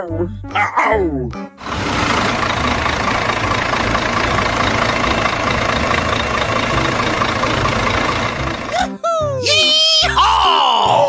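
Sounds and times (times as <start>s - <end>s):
vehicle engine running: 1.6s - 8.8s.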